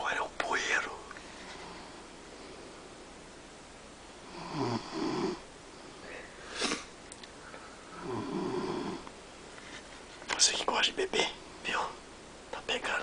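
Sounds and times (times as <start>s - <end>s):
man snoring: 4.3s - 5.4s, 8.0s - 9.1s.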